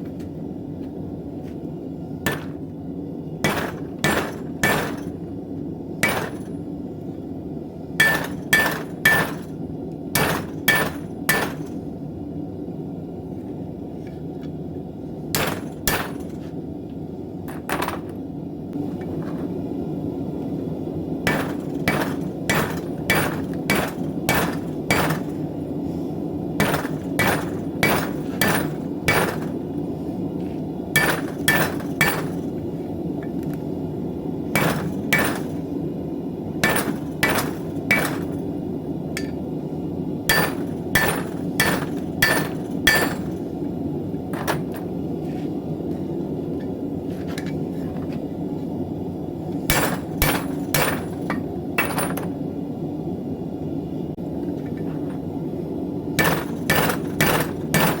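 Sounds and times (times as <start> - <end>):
hammer striking steel on anvil: 2.3 - 2.6, 3.4 - 5.2, 6.0 - 6.5, 8.0 - 9.5, 10.2 - 11.7, 15.4 - 16.3, 21.3 - 25.4, 26.6 - 29.6, 31.0 - 32.4, 34.5 - 35.6, 36.6 - 38.4, 39.2 - 39.4, 40.3 - 43.4, 49.7 - 52.3, 56.2 - 58.0.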